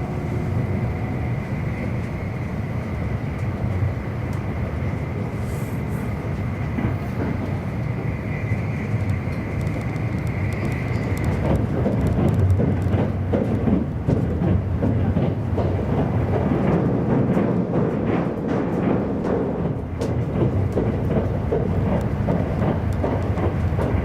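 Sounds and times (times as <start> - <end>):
train wheels rumbling on track: 0.0 - 24.0
clatter and knocking from rails: 9.0 - 24.0.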